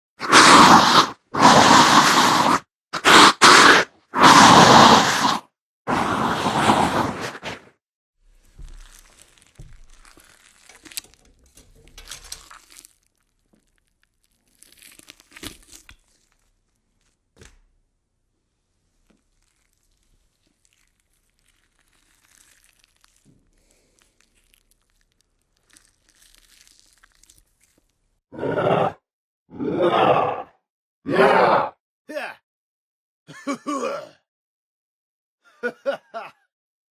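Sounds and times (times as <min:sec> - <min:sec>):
crinkling and rustling: 0:08.2 - 0:28.2.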